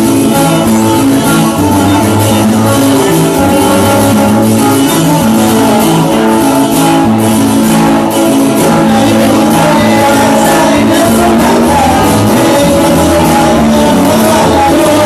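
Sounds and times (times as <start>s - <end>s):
instrumental guitar band music: 0.0s - 15.0s.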